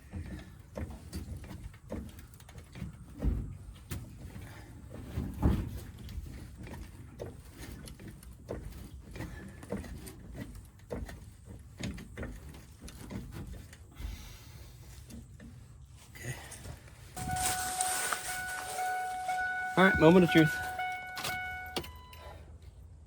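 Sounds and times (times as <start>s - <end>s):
jack knocking and clunking: 0.0s - 14.2s, 18.4s - 22.2s.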